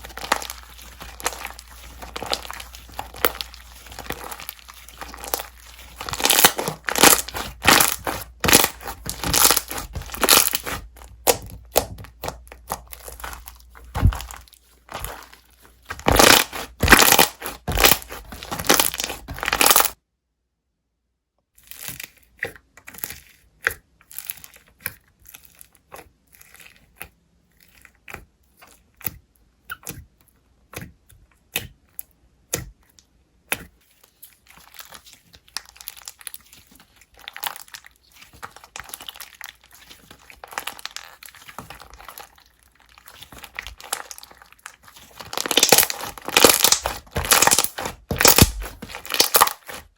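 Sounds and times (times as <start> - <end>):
slime crackling: 0.0 - 20.0, 33.6 - 49.9.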